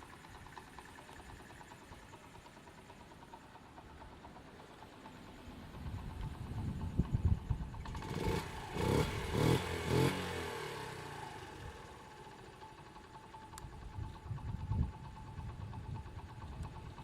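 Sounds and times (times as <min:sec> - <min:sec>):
small motorcycle engine idling: 0:00.0 - 0:17.0
engine revving: 0:07.8 - 0:12.1.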